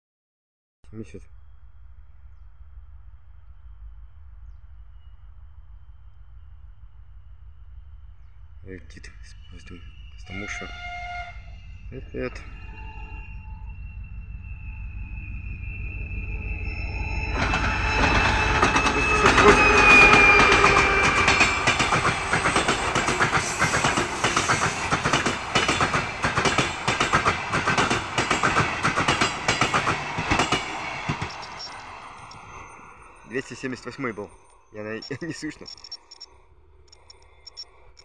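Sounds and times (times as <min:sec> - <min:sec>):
diesel locomotive passing with whine: 0:00.9 - 0:38.0
train wheels clicking over rail joints: 0:17.4 - 0:32.5.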